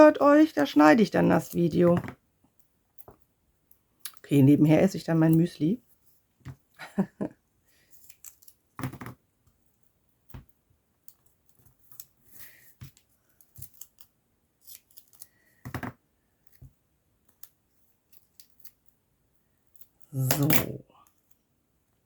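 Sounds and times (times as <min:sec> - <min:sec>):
scissors snipping paper: 0:13.3 - 0:15.4.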